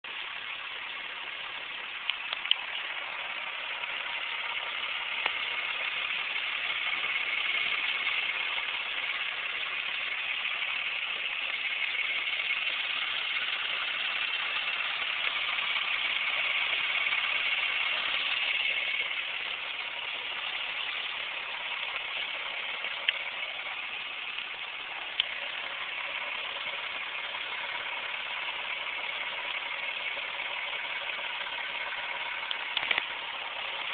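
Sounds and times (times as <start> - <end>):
car engine idling: 0.0 - 33.9
sharp clicks: 32.5 - 33.2.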